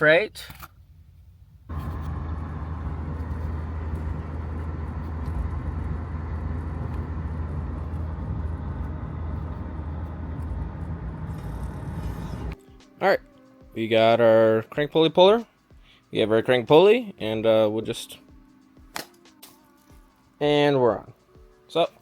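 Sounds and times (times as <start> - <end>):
car road noise rumble: 0.7 - 12.6.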